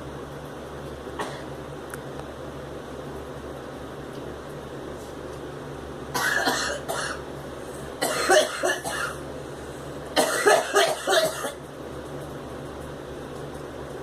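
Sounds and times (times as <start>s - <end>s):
low fan hum: 0.0s - 14.0s
woman coughing: 1.2s - 1.5s, 6.2s - 7.2s, 8.0s - 9.2s, 10.2s - 11.6s.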